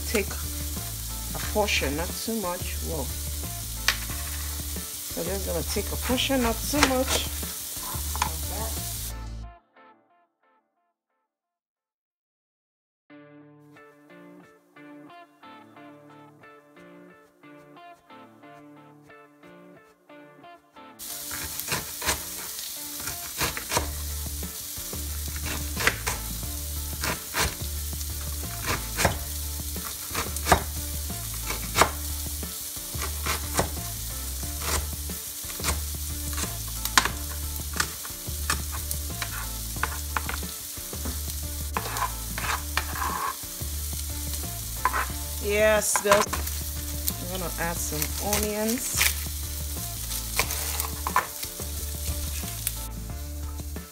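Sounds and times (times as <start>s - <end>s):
food sizzling in frying pan: 0.0s - 9.1s, 21.0s - 53.9s
utensil clicking and scraping: 21.2s - 24.0s, 41.8s - 43.4s.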